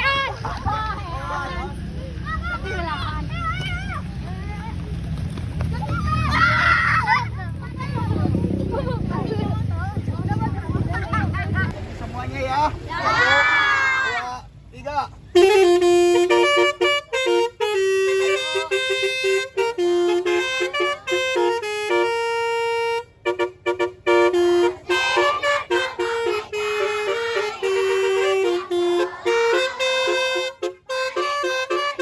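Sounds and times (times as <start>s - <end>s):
minibus horn playing a tune: 15.4s - 32.0s.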